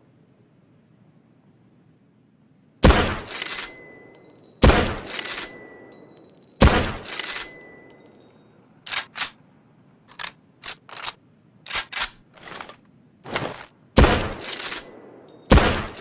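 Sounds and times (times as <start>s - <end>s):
rifle shots with echo: 2.8s - 4.0s, 4.6s - 6.0s, 6.6s - 7.8s, 14.0s - 16.0s
rifle bolt metallic clicks: 2.8s - 9.4s, 10.1s - 12.8s, 14.0s - 16.0s.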